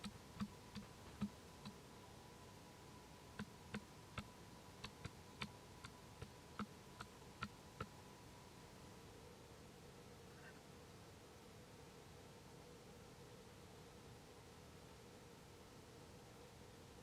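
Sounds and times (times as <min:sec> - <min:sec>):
sharp irregular clicks: 0:00.0 - 0:01.8, 0:03.4 - 0:07.9
faint steady hum: 0:00.0 - 0:17.0.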